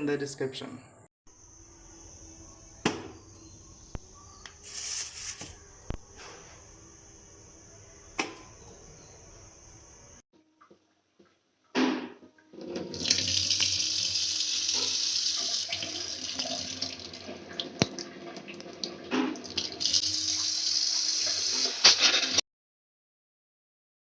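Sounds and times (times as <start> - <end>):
water gushing from outlet: 12.7 - 22.4.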